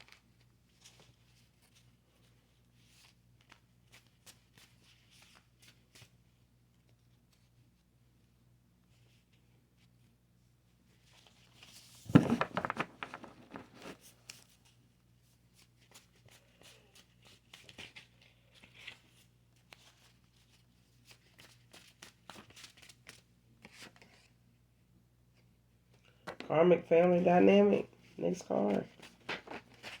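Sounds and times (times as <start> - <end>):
cards being shuffled: 11.1 - 14.6, 15.8 - 24.3, 28.5 - 30.0.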